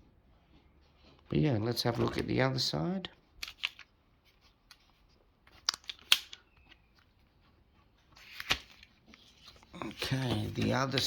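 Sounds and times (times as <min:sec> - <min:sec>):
plastic sleeve crinkling and clicking: 0:04.6 - 0:07.2.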